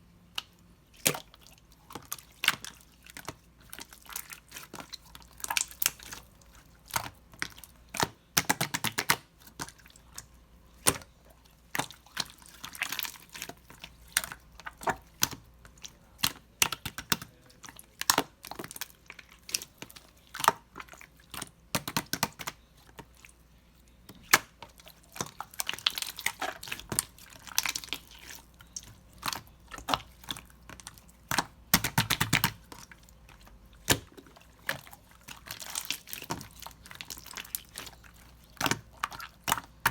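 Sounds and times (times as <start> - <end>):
slime clicking and popping: 24.1 - 32.9.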